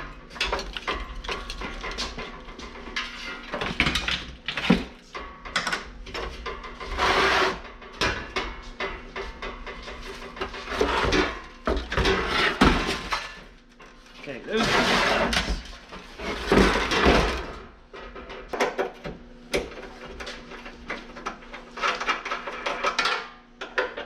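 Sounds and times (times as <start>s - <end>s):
metal parts knocking and clattering: 0.0s - 6.8s.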